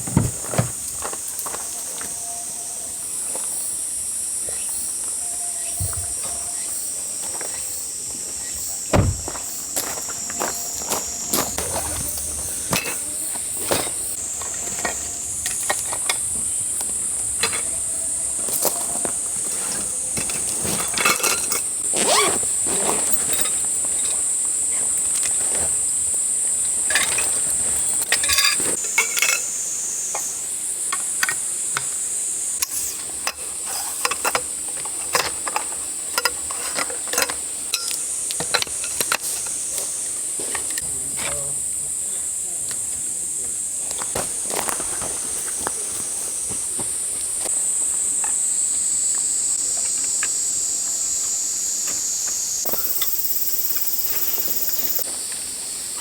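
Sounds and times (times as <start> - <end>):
insects shrilling: 0.4 - 34.6, 48.4 - 56.0
dishes and camp gear clinking: 10.1 - 24.4, 26.8 - 30.3, 32.6 - 41.4, 52.7 - 55.1.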